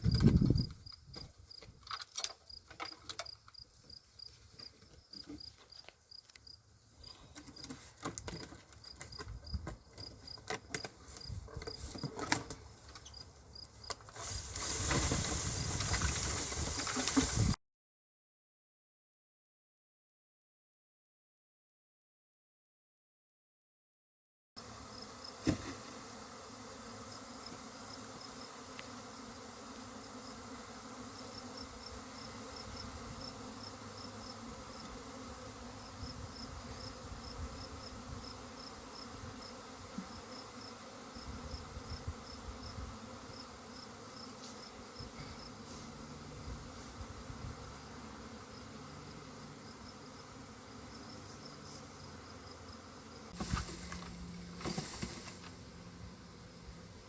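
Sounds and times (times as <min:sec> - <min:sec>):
bee swarm humming: 0:24.6 - 0:57.0.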